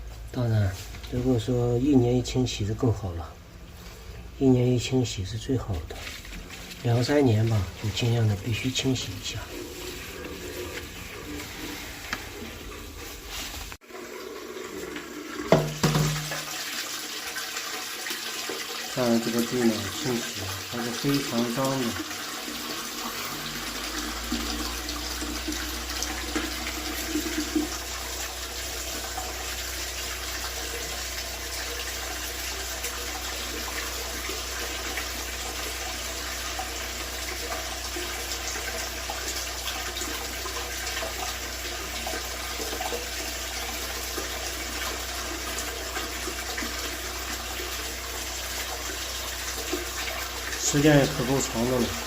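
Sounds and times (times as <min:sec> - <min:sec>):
water rushing through pipes: 0:00.0 - 0:52.0.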